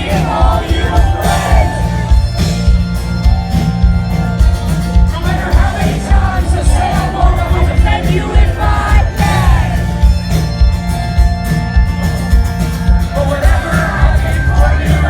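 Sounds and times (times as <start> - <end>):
person singing: 0.0 - 2.2
crowd shouting and whooping: 0.0 - 15.0
live rock band playing: 0.0 - 15.0
pounding drum beat: 0.0 - 15.0.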